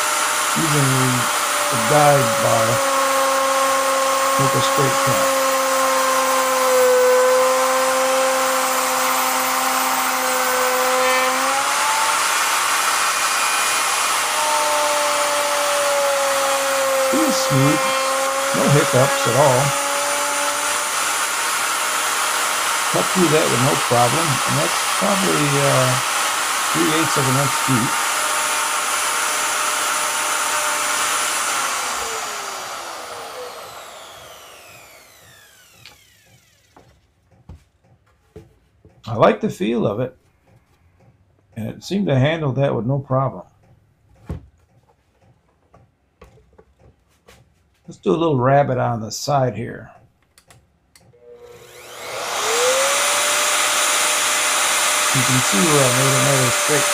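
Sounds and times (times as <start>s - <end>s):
router bit cutting wood: 0.0s - 37.0s, 51.2s - 56.9s
router motor whining: 0.0s - 37.1s, 51.0s - 56.9s.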